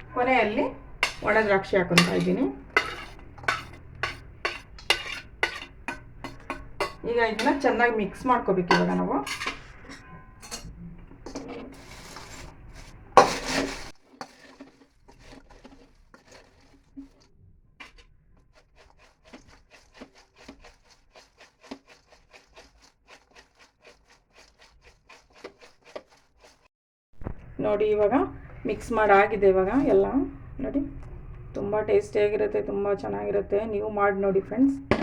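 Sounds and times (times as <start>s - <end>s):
dry snack rustling and scraping: 0.8s - 7.9s, 11.3s - 26.7s.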